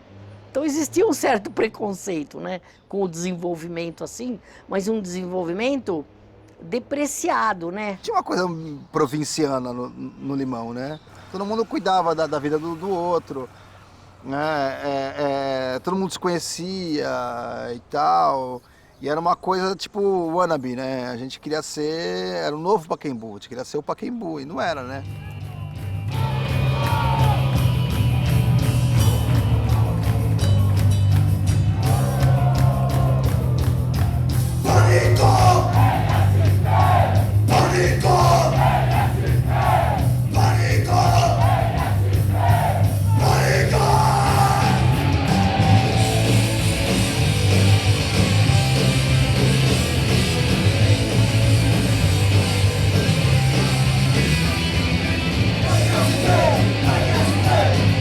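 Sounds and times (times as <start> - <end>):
distorted rock music: 25.0 - 58.0
shouted vocals: 25.2 - 27.6, 31.7 - 33.6, 34.6 - 46.5, 55.4 - 58.0.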